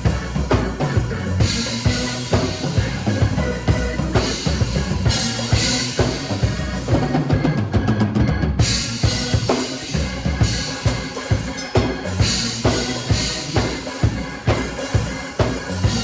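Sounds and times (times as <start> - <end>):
drum kit groove: 0.0 - 16.0.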